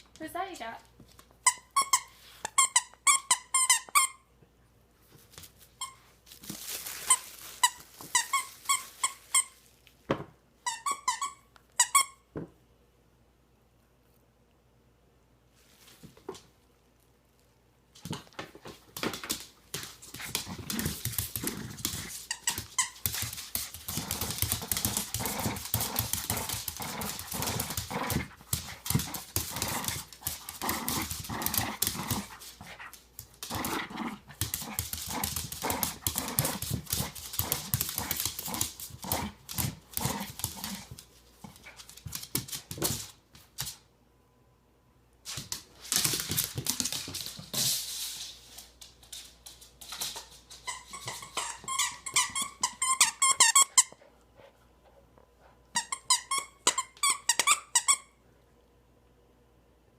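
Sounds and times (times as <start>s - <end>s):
dog growling playfully: 20.4s - 22.2s, 23.8s - 32.8s, 33.4s - 41.0s.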